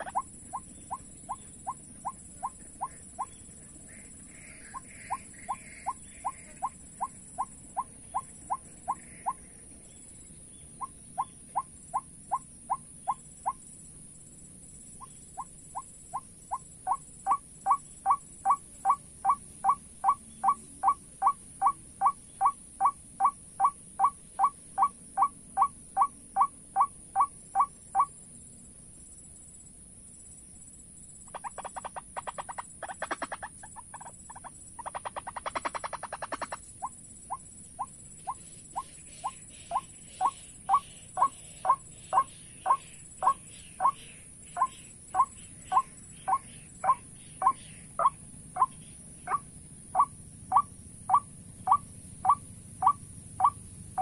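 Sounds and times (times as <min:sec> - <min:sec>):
waterhen calling: 0:00.0 - 0:09.4, 0:31.3 - 0:36.9, 0:38.7 - 0:44.0, 0:44.6 - 0:48.7, 0:50.0 - 0:53.6.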